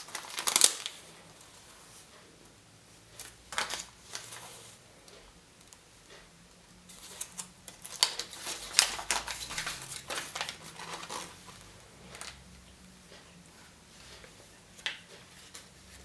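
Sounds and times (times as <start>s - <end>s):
wrapper crinkling: 0.0s - 1.0s, 7.0s - 12.4s.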